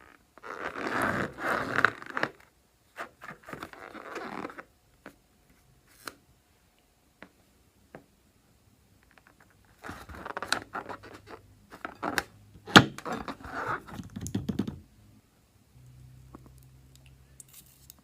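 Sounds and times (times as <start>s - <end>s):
scraping and rustling handling noise: 9.0s - 14.2s.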